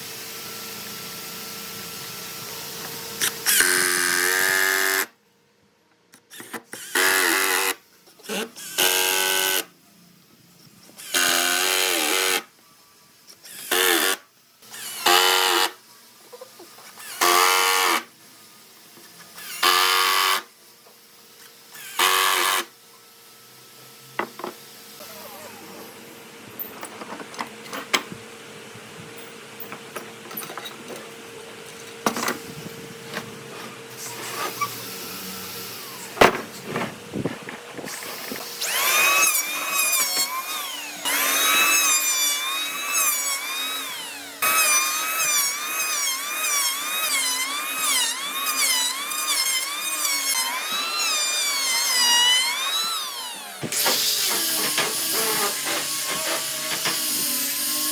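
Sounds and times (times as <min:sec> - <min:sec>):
power tool bursts: 0:00.0 - 0:05.1, 0:06.3 - 0:09.7, 0:13.4 - 0:15.8, 0:16.9 - 0:18.1, 0:19.4 - 0:20.6, 0:21.4 - 0:22.8, 0:33.8 - 0:57.9.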